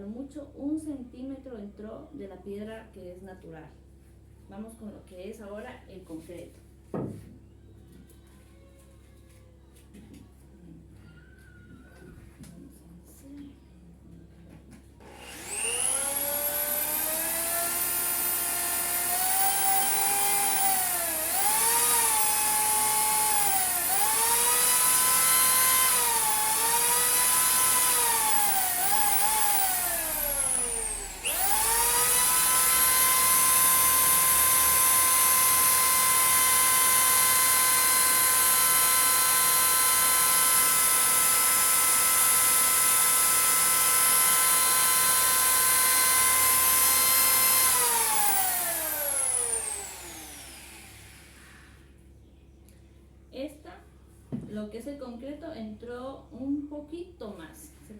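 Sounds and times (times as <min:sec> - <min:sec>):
electric drill boring into concrete: 0:15.0 - 0:51.7.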